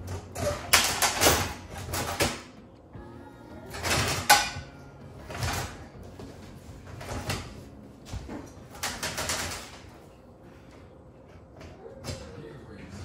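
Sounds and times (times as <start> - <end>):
dishwasher rack rattling: 0.0 - 2.6, 3.7 - 10.0.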